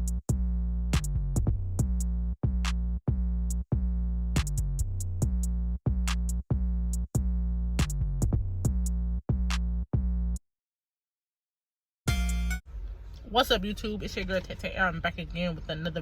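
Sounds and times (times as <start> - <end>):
drum machine and hi-hat hits: 0.0 - 10.3, 12.1 - 12.6
deep bass notes: 0.0 - 10.4.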